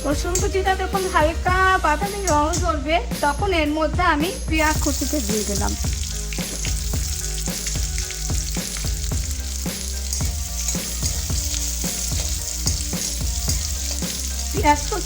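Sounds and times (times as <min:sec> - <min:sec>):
onion sizzling in oil: 0:00.0 - 0:15.0.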